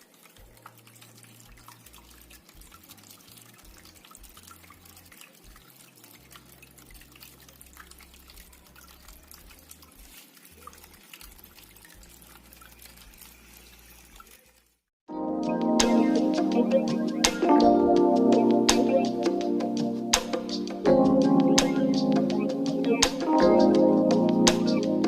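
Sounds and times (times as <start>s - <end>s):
fountain water trickling: 0.0s - 14.8s, 15.6s - 25.0s
small water drips: 0.0s - 14.8s.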